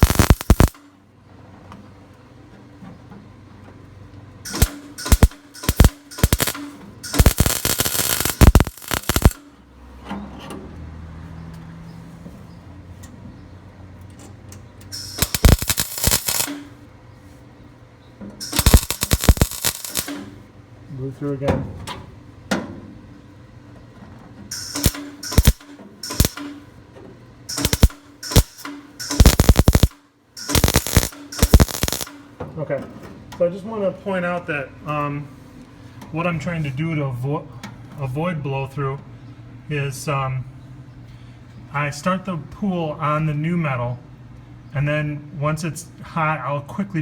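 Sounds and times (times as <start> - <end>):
welding arc crackling: 0.0 - 0.8, 4.5 - 9.5, 14.9 - 16.8, 18.4 - 20.4, 24.5 - 26.6, 27.5 - 32.2.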